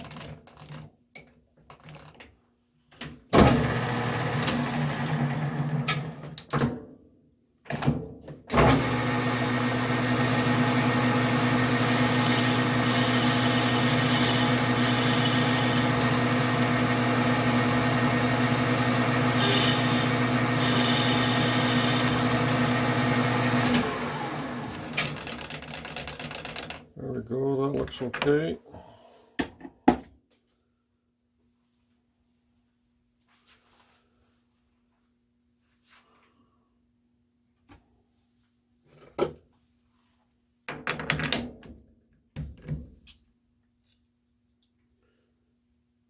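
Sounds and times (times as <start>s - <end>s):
metal lathe motor hum: 3.6s - 6.1s, 8.6s - 25.5s
lathe tool cutting hiss: 9.3s - 25.0s.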